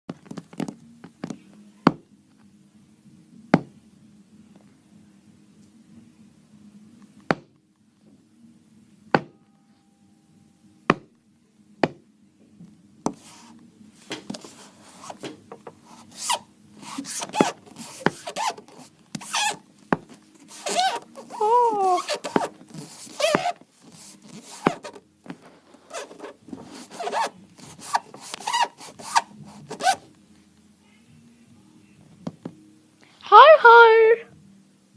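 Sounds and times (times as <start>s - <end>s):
rustling scraping strokes: 13.2s - 30.1s.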